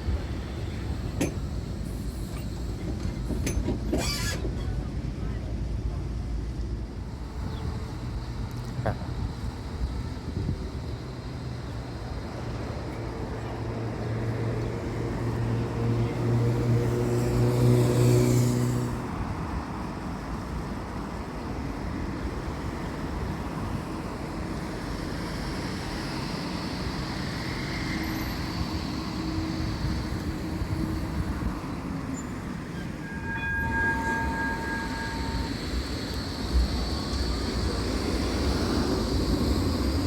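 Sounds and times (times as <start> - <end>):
electric tram passing: 0.0 - 40.0
brief tones: 32.8 - 36.2.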